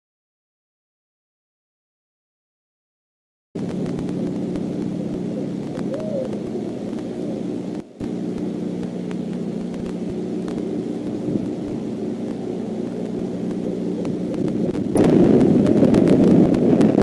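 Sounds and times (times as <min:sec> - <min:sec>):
low hum with fixed tones: 0:03.6 - 0:17.0.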